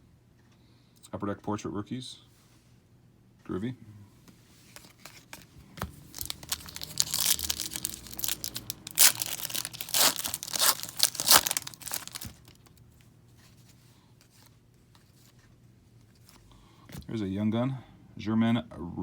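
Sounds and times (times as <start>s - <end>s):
foil wrapper tearing and crinkling: 4.8s - 12.8s.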